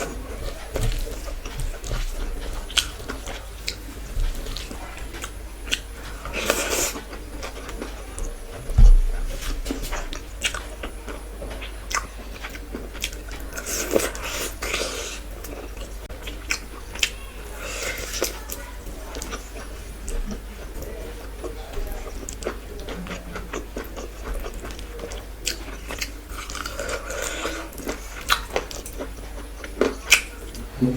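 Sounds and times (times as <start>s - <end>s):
wet chewing and smacking: 0.0s - 30.7s
low thump: 8.7s - 9.8s.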